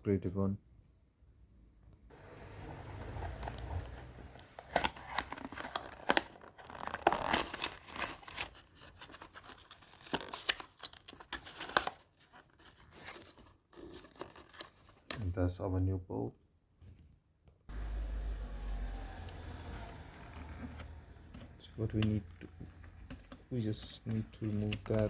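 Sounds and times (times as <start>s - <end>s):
packaging crinkling and tearing: 3.1s - 15.2s, 24.2s - 25.0s.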